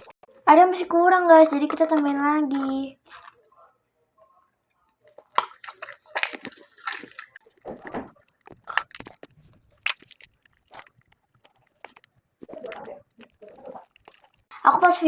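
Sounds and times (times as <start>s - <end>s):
sticky clay squelching: 5.0s - 15.0s.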